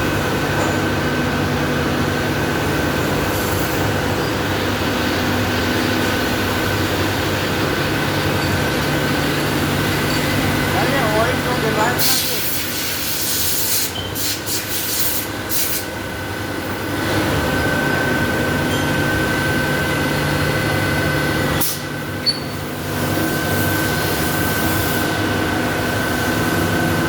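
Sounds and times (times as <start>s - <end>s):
lathe machine drone: 0.0s - 12.6s, 15.4s - 27.0s
high machine whine: 0.0s - 27.0s
short hissing bursts: 12.0s - 15.9s.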